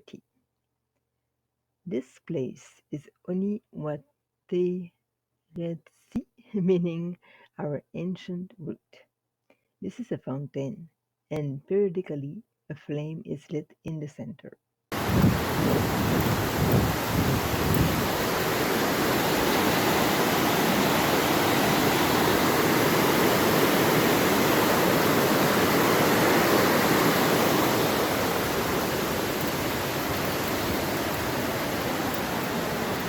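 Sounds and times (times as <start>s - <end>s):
falling water roar: 14.9s - 33.0s.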